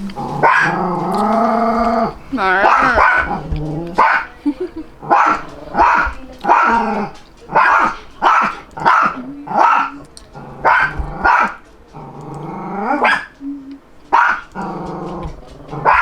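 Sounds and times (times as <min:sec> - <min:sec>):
dog barking: 0:10.6 - 0:11.6, 0:13.0 - 0:13.3, 0:14.1 - 0:14.6.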